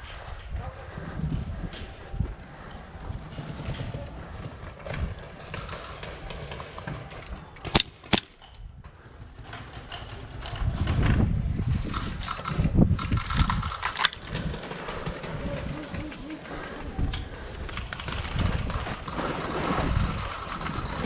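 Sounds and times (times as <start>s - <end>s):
airsoft gun shots: 7.6s - 8.4s.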